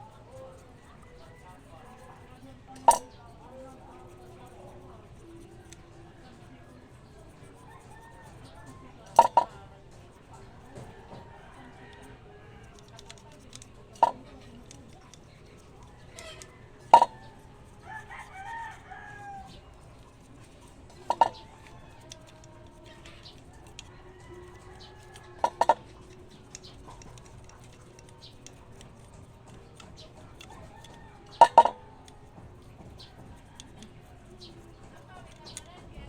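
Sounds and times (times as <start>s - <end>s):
rooster crowing: 7.7s - 9.5s, 15.9s - 19.8s, 23.5s - 26.3s, 30.4s - 32.1s.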